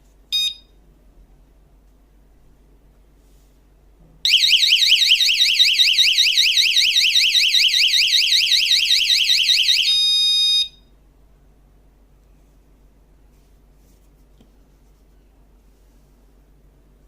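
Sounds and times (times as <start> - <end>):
door alarm siren warbling: 4.3 - 10.7
short steady alarm tone: 4.3 - 10.9.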